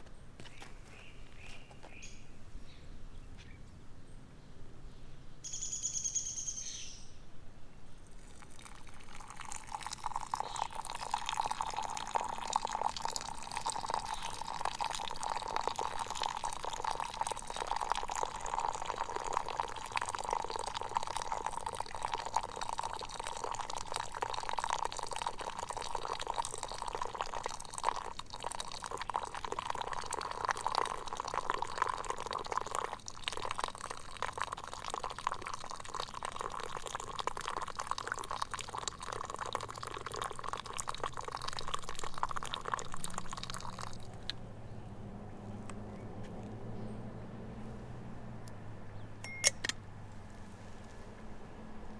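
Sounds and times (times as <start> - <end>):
bird call: 5.4 - 7.2
water running and splashing: 8.1 - 44.3.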